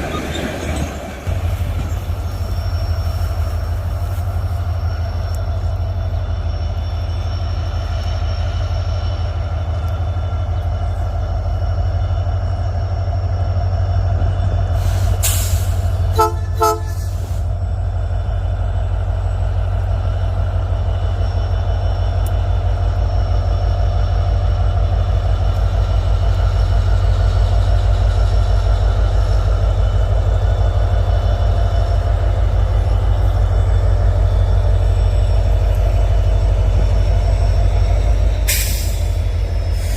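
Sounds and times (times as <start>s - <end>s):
freight train rumbling past: 0.0s - 39.9s
train horn toots: 16.0s - 17.3s.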